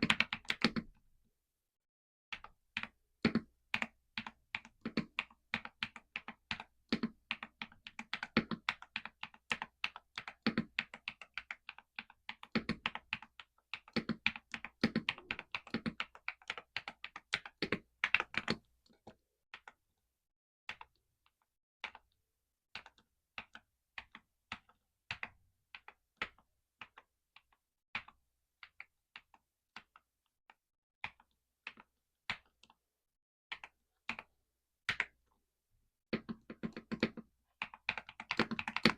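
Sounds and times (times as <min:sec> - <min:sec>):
typing on mechanical keyboard: 0:00.0 - 0:00.9, 0:02.3 - 0:19.8, 0:22.8 - 0:30.1, 0:33.5 - 0:34.3, 0:36.2 - 0:38.9.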